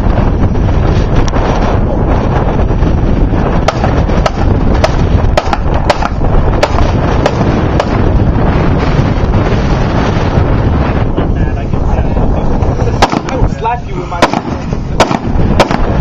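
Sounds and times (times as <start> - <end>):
wind buffeting microphone: 0.0 - 16.0
gunshots: 3.6 - 8.0, 13.0 - 13.5, 14.2 - 16.0.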